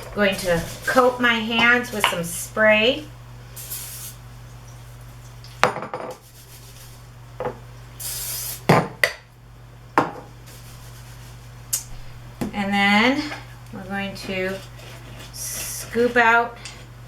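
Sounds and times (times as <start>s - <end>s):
cooking spray hissing: 0.0s - 7.2s, 7.9s - 8.7s.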